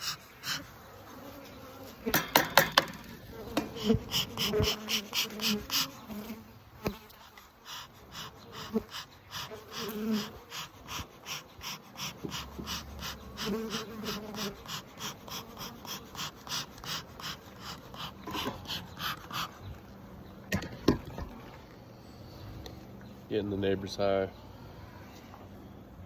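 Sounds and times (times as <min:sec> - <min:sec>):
honeybees buzzing: 0:00.0 - 0:25.1
smoker bellows puffing: 0:01.3 - 0:06.4.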